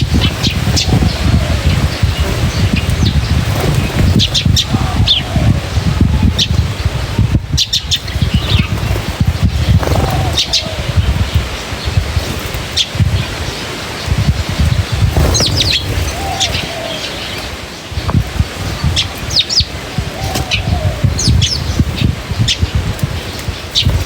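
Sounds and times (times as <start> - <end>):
low falling bird call: 0.0 - 22.7
birds chirping: 0.0 - 24.0
dense low rumble: 14.2 - 16.8.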